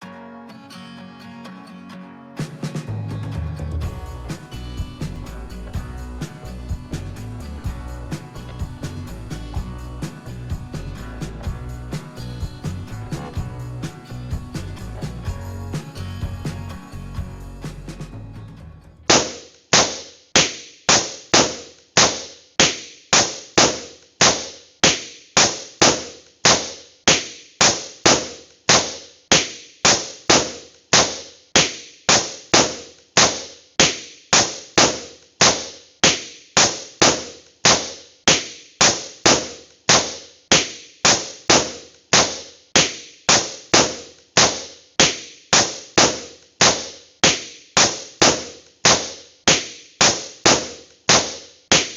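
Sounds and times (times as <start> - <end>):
balloons popping: 19.1 - 51.9.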